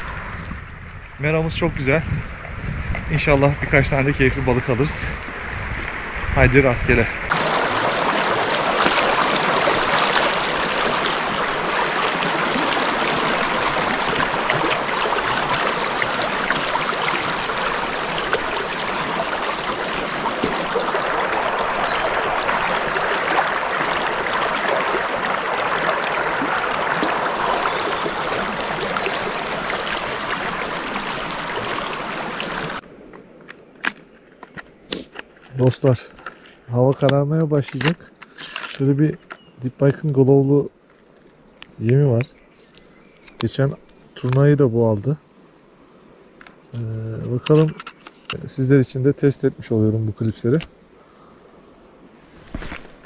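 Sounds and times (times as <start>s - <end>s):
stream water rushing: 7.3s - 32.9s, 52.2s - 53.0s.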